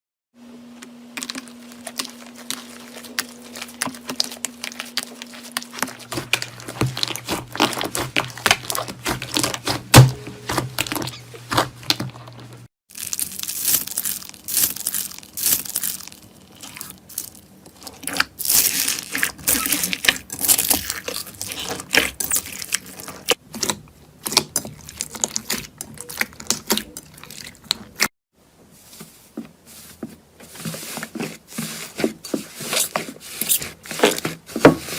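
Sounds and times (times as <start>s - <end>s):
slime crackling and popping: 12.9s - 28.0s.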